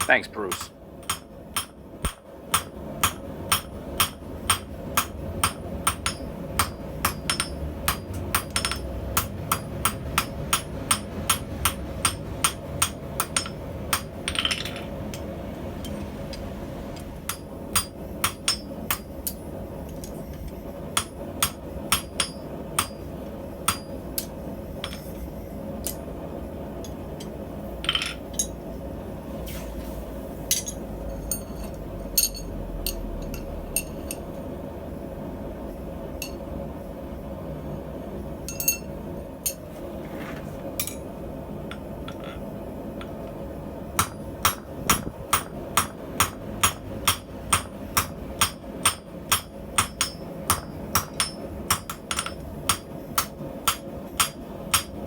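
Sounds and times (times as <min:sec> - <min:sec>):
hammer ringing on anvil: 0:02.6 - 0:14.5, 0:23.7 - 0:24.0, 0:44.0 - 0:54.9.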